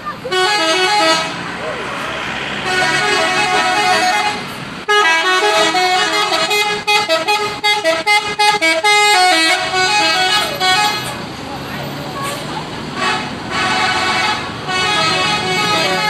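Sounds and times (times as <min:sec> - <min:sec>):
musical air horns: 0:00.3 - 0:01.4, 0:02.6 - 0:11.2, 0:13.0 - 0:16.0.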